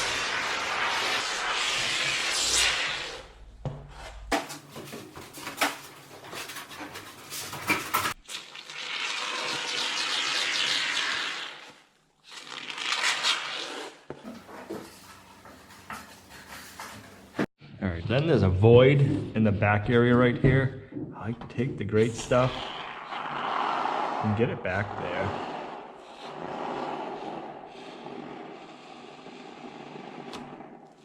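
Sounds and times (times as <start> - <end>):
foam board scraping on garage door: 0.0 - 3.3, 12.3 - 17.5, 22.6 - 31.0.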